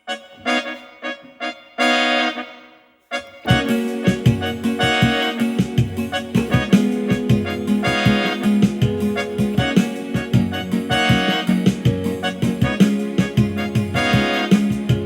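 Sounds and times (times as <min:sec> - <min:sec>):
keyboard chords and melody: 0:00.0 - 0:15.0
busy drum beat: 0:03.5 - 0:15.0.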